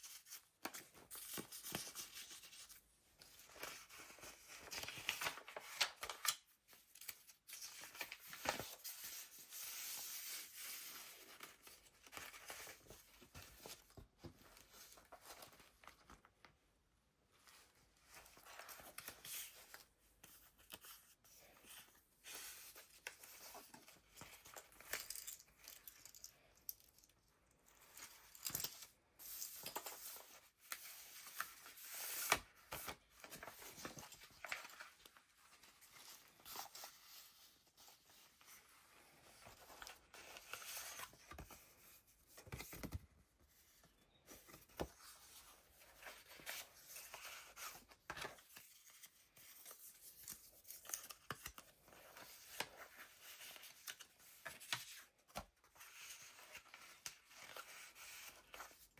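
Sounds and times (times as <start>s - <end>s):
thick paper rustling and crinkling: 3.3s - 16.3s, 29.6s - 43.0s.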